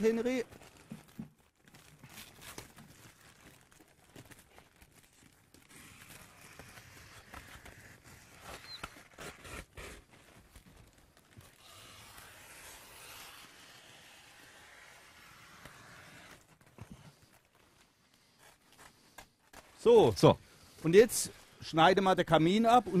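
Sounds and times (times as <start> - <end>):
plastic film rustling and cutting: 0.0 - 23.0.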